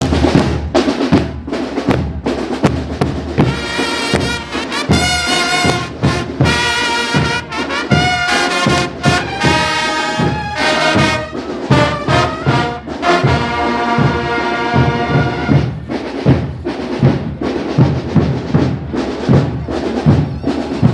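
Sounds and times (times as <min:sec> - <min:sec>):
drums beating: 0:00.0 - 0:20.9
trumpets and trombones playing melody: 0:03.4 - 0:15.8.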